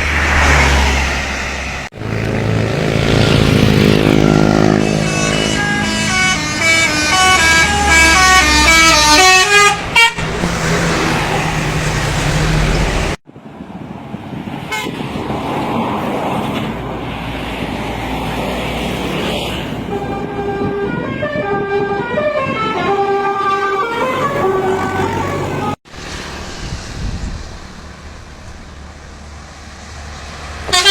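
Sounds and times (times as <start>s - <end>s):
vehicle running: 0.0s - 13.2s, 15.0s - 30.9s
traffic noise: 0.0s - 30.9s
multi-tone bus horn melody: 2.0s - 11.6s, 14.7s - 15.0s, 19.8s - 25.8s, 30.6s - 30.9s.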